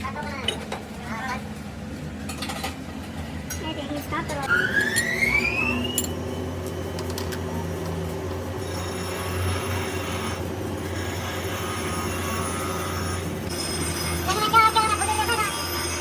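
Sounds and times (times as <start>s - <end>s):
machinery humming: 0.0s - 16.0s
motor whine rising in pitch: 4.5s - 14.5s.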